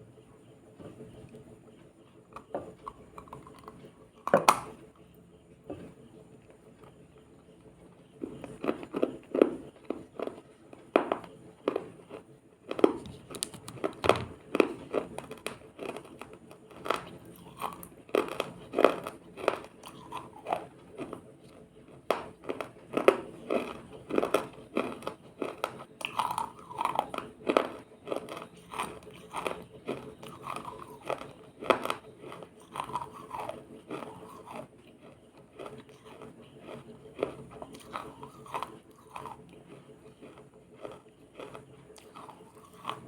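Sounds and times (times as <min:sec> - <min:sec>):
person crunching ice: 0:22.4 - 0:39.4.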